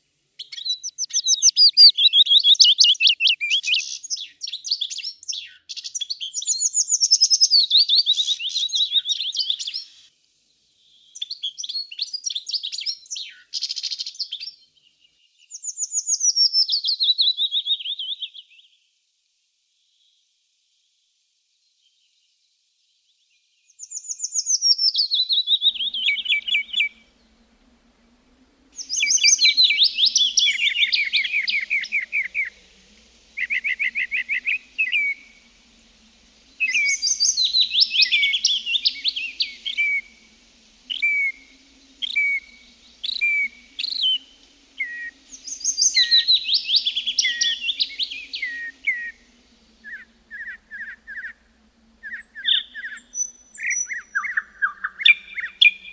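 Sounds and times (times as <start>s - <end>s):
songbird trills: 0.0s - 10.1s, 23.8s - 55.9s
bird chirps: 0.4s - 10.1s, 23.8s - 55.9s
faint low hum: 25.8s - 53.6s.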